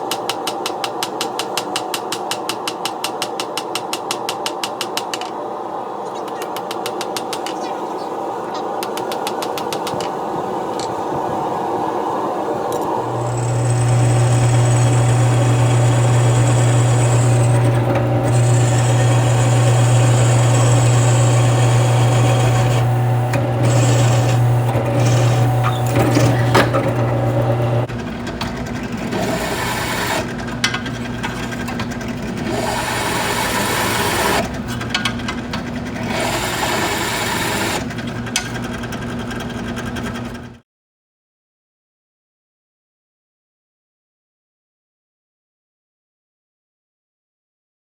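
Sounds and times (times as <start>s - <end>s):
power tool grinding steel: 13.0s - 34.6s, 36.0s - 37.9s.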